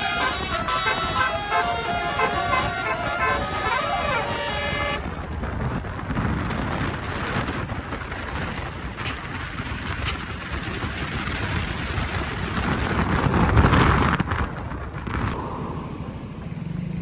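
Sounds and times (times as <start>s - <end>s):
bus multi-tone horn melody: 0.0s - 5.5s
passing bus and traffic rush: 0.0s - 17.0s.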